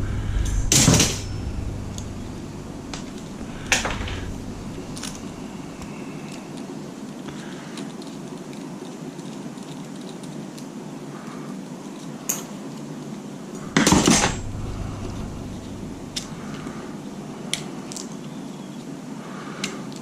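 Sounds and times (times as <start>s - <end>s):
low steady hum: 0.0s - 9.7s, 12.9s - 18.4s.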